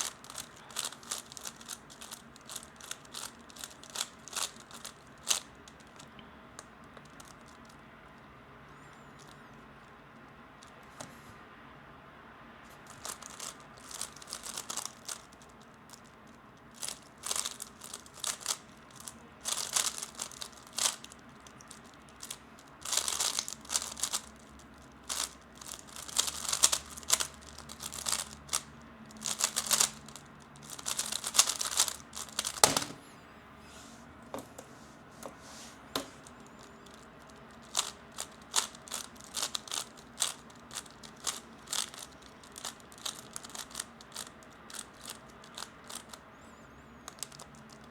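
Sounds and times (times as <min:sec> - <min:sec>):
plastic cube clicking: 0:00.0 - 0:06.0, 0:13.0 - 0:16.0, 0:16.8 - 0:24.3, 0:25.0 - 0:30.0, 0:30.6 - 0:33.0, 0:36.9 - 0:46.2.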